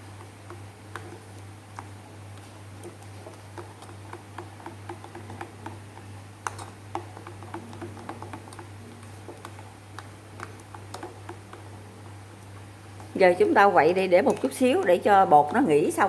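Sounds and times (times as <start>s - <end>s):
steady low hum: 0.0s - 16.0s
utensil clicking against bowl: 0.2s - 5.8s, 6.4s - 11.6s, 14.2s - 15.6s.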